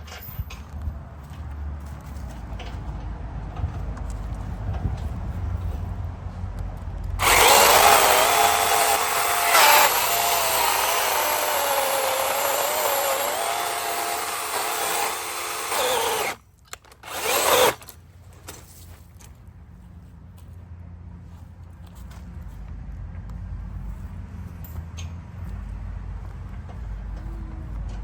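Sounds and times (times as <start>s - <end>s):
chainsaw cutting wood: 7.2s - 16.4s, 17.0s - 17.8s.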